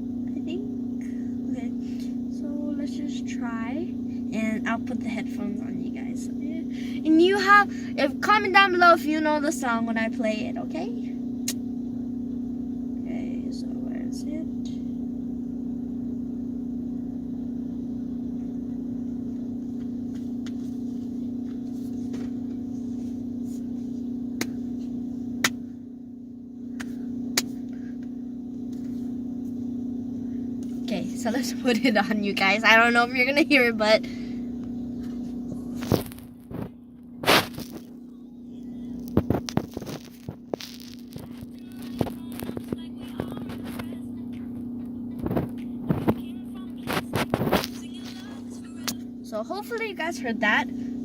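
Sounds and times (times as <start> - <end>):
steady low hum: 0.0 - 51.0
headphones rustling and clicking: 39.1 - 43.9.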